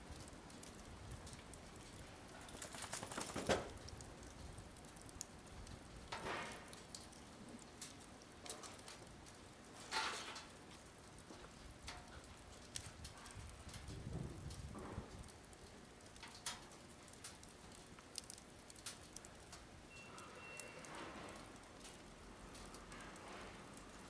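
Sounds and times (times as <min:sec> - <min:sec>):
fire popping: 0:00.0 - 0:24.0
wood fire crackling: 0:00.0 - 0:24.0.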